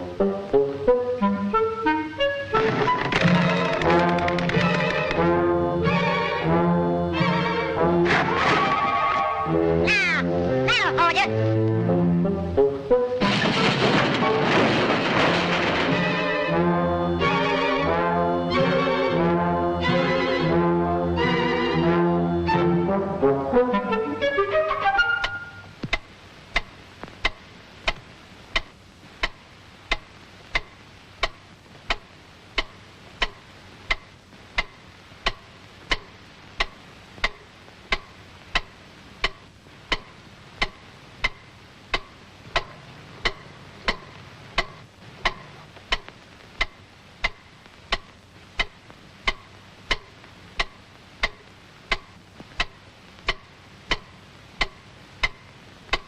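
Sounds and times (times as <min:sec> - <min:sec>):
clock ticking loudly: 0:25.2 - 0:56.0.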